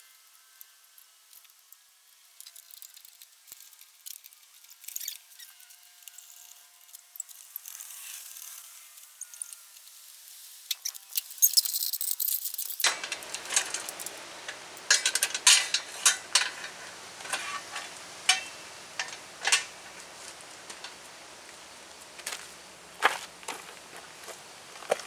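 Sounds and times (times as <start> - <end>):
high hiss with rapid clicks: 12.6 - 25.0
metal clinks and knocks: 12.8 - 25.0.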